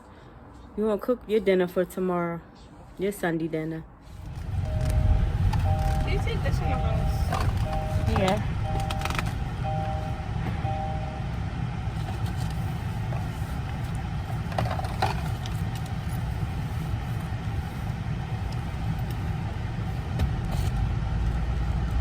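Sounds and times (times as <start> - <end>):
engine and road rumble: 0.0 - 22.0
two-tone chime beeps: 4.6 - 11.4.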